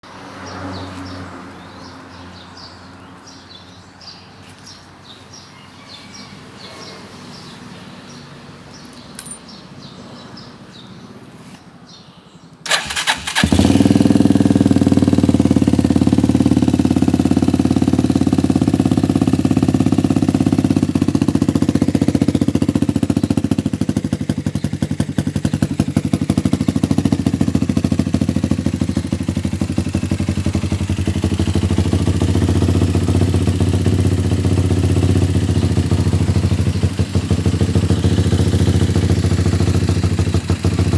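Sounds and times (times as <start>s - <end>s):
motorcycle engine starting and running: 12.6s - 40.9s.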